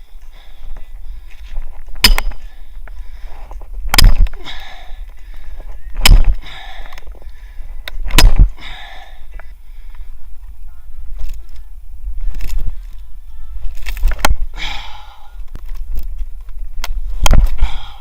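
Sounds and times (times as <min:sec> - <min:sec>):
axe splitting firewood: 0:02.0 - 0:02.4.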